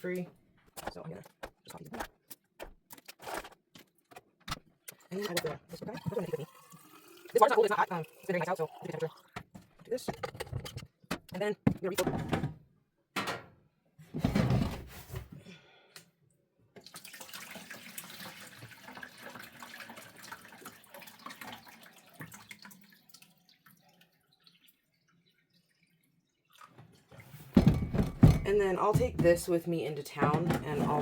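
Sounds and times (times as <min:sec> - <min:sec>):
water pouring into a bottle: 0:05.8 - 0:09.4, 0:16.8 - 0:27.4
bottle clunks: 0:27.6 - 0:29.4.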